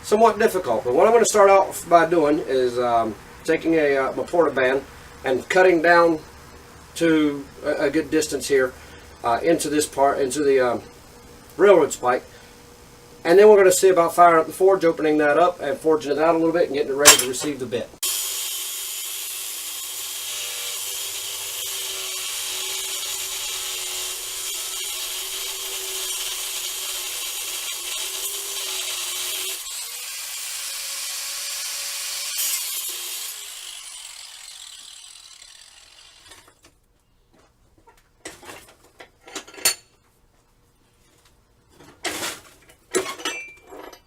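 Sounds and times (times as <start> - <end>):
short metallic clinks: 17.0 - 17.4
band saw cutting metal: 18.0 - 36.6.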